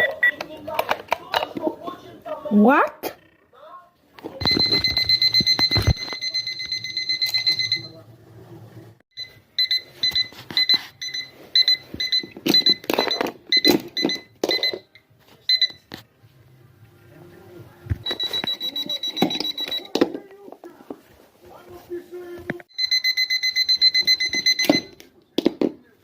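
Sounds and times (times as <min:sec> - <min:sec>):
alarm clock beeping: 0:00.0 - 0:00.4, 0:04.4 - 0:08.0, 0:09.2 - 0:15.9, 0:18.0 - 0:20.0, 0:22.7 - 0:25.0.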